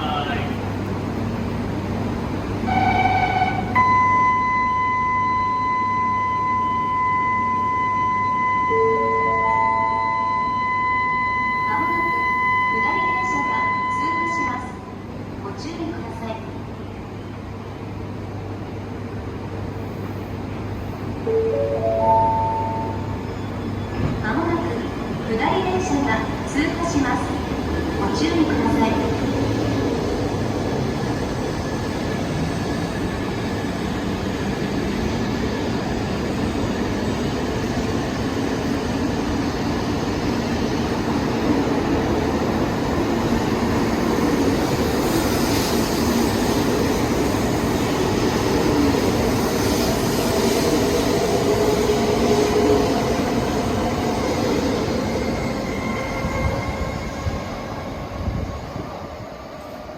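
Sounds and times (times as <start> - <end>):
train wheels and air rumble: 0.0 - 8.8, 14.6 - 59.9.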